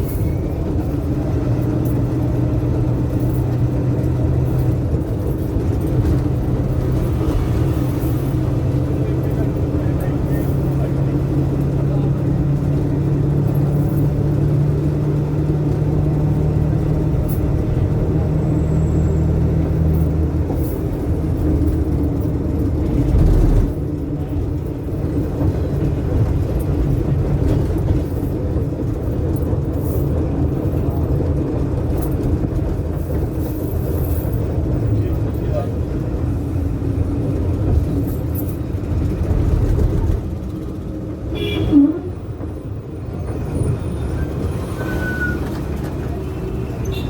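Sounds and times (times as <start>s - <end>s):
minibus engine hum: 0.0s - 47.0s
road noise: 0.0s - 47.0s.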